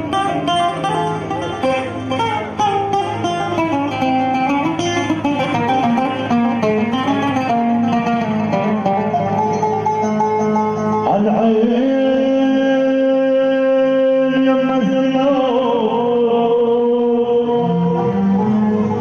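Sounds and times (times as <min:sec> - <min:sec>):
loud amplified wedding music: 0:00.0 - 0:19.0.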